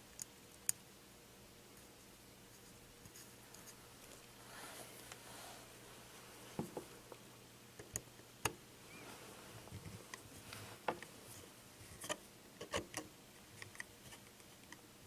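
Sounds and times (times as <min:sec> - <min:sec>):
soft rustle: 0:02.0 - 0:07.1, 0:08.8 - 0:12.1.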